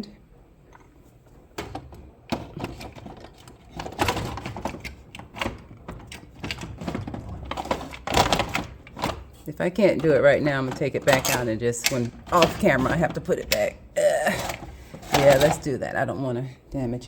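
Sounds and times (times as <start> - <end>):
metal parts clattering in a box: 2.3 - 9.4, 10.6 - 13.6, 14.2 - 15.7.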